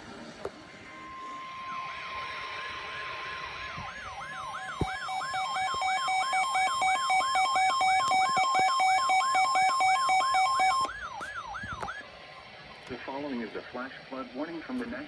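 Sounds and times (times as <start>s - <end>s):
lower steady tone: 0.0s - 12.5s
siren-like warble: 0.7s - 12.0s
steady alert tone: 0.8s - 10.9s.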